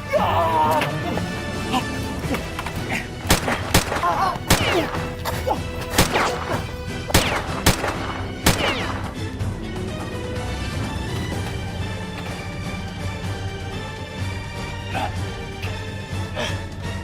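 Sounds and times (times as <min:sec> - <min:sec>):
background music: 0:00.0 - 0:17.0
gunshots: 0:02.5 - 0:09.6.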